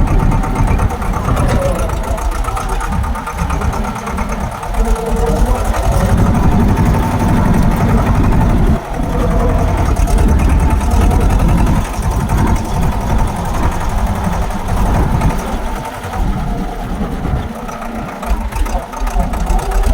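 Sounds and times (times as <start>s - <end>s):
tractor engine rumbling: 0.0s - 19.9s.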